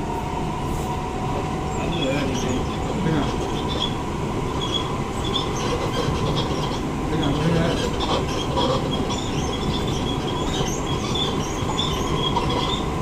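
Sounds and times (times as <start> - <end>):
train rumbling: 0.0 - 13.0
high-pitched bogie squeaks: 7.4 - 12.9.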